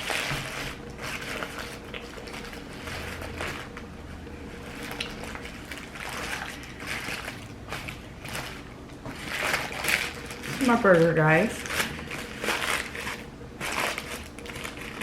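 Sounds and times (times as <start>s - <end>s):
wet chewing and smacking: 0.0s - 10.6s.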